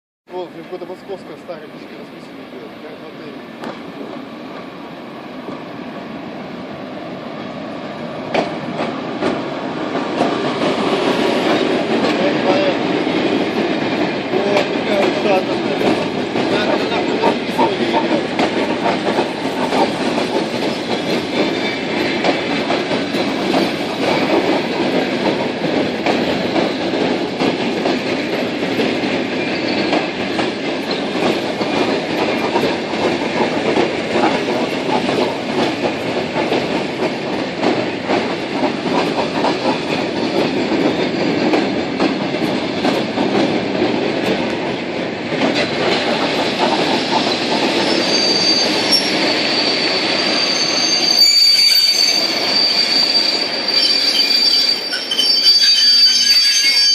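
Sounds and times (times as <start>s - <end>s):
train wheels clattering over rail joints: 8.2s - 50.4s.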